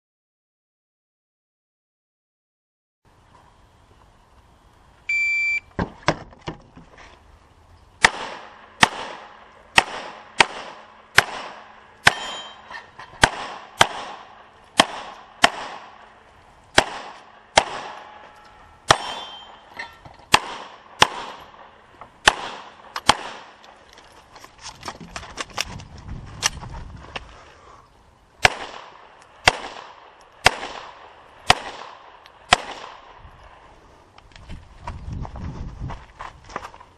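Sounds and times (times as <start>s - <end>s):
shot timer beep: 5.1s - 5.7s, 12.1s - 12.7s, 19.0s - 19.7s
pistol shots: 8.0s - 12.6s, 13.2s - 16.1s, 16.7s - 18.2s, 18.9s - 19.7s, 20.3s - 23.8s, 28.4s - 33.2s.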